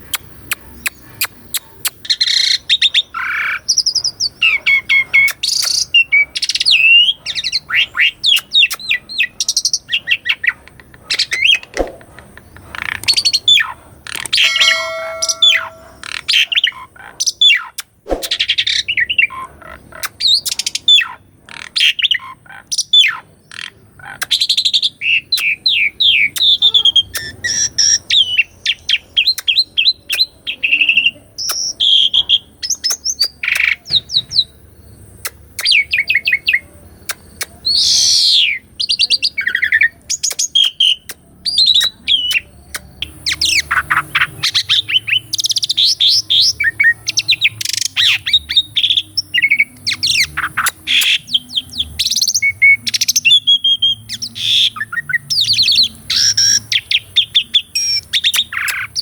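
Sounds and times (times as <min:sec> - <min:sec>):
starling singing: 0:00.8 - 0:16.6, 0:37.6 - 0:59.0.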